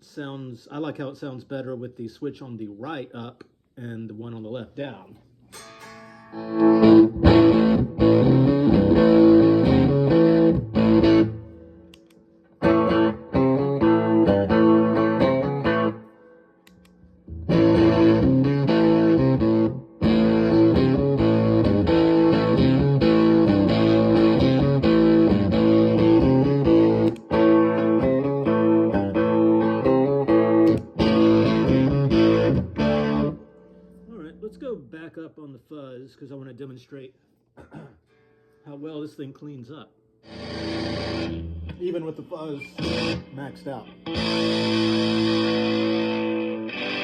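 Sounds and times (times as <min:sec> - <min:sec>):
distorted electric guitar: 0:05.5 - 0:34.7, 0:40.2 - 0:47.0.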